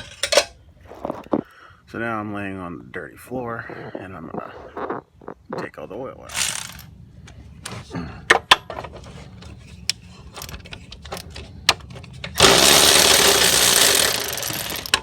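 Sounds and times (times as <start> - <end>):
wrench clicking and knocking: 12.4 - 15.0.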